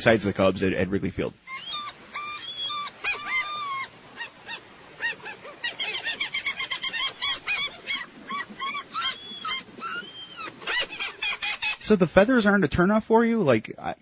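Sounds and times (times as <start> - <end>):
seagulls calling: 1.5 - 12.0.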